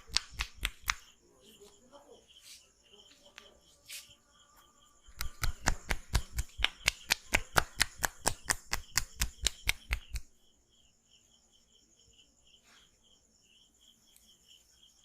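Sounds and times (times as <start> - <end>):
hands slapping and tapping head: 0.0 - 1.1, 5.1 - 10.3.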